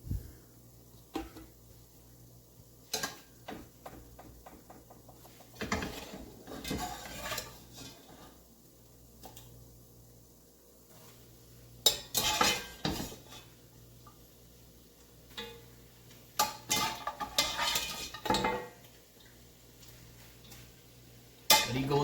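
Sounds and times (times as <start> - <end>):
metal spoon scraping a pot: 5.6 - 8.4, 11.8 - 13.6, 16.4 - 18.6.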